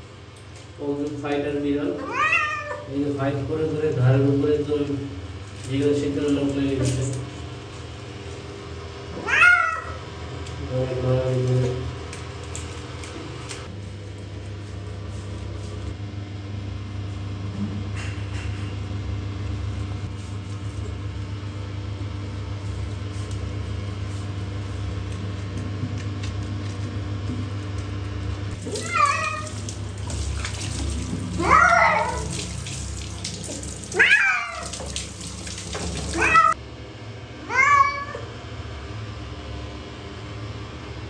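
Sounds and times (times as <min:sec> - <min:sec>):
low mechanical hum: 0:00.0 - 0:41.0
cat meowing loudly: 0:02.0 - 0:02.9, 0:09.1 - 0:10.1, 0:28.6 - 0:29.9, 0:31.3 - 0:32.7, 0:33.5 - 0:35.1, 0:35.9 - 0:36.6, 0:37.5 - 0:38.3.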